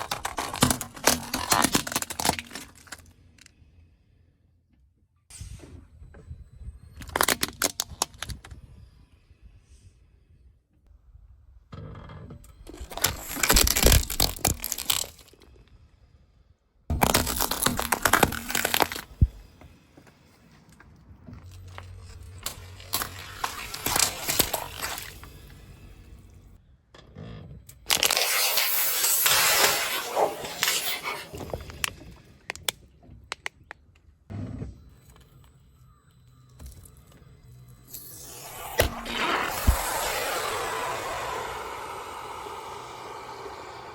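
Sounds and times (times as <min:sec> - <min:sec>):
objects cracking under a tyre: 0:00.0 - 0:03.5, 0:12.5 - 0:15.5, 0:16.9 - 0:19.7, 0:20.7 - 0:25.8, 0:27.7 - 0:34.1, 0:38.0 - 0:43.2.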